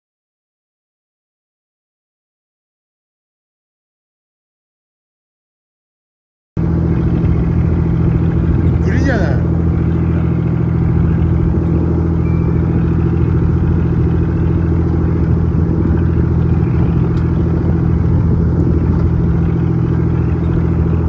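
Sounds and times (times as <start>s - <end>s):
boat engine humming: 6.6s - 21.0s.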